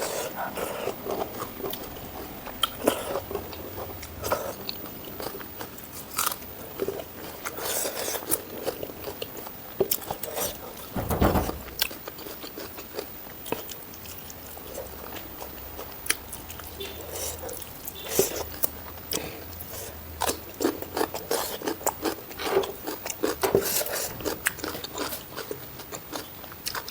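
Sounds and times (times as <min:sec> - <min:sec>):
person chewing and biting: 0:00.0 - 0:10.6, 0:11.8 - 0:26.9
heavy thump: 0:10.9 - 0:11.9.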